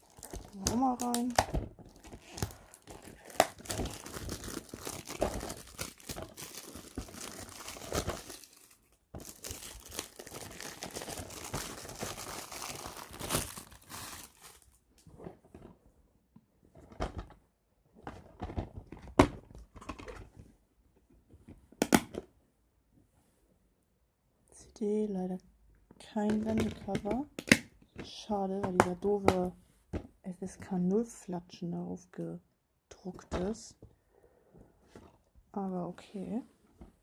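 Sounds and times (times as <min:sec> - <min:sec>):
plastic shrink-wrap tearing: 0:00.0 - 0:14.8.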